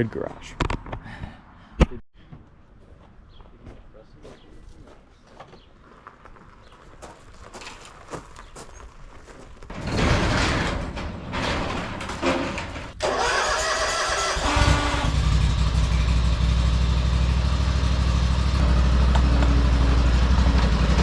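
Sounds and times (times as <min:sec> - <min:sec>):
engine starting and idling: 0:12.9 - 0:21.0.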